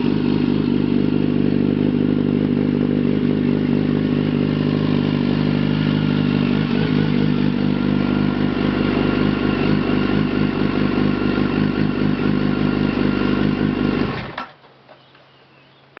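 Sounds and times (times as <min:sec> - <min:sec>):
motorcycle engine idling: 0:00.0 - 0:16.0.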